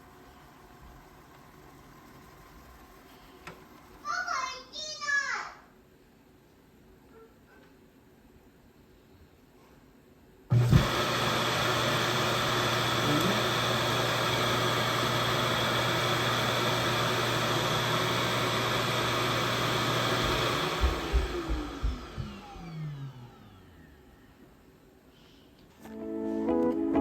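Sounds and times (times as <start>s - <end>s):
robot vacuum suction motor running: 10.5s - 23.8s.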